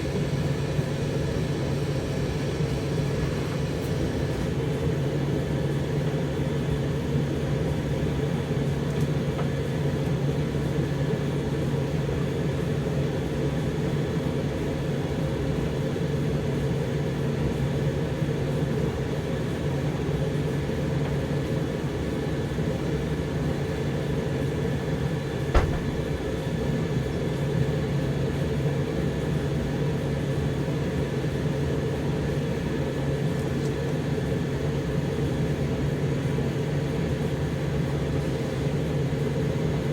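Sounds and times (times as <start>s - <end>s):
tumble dryer humming: 24.4s - 26.8s.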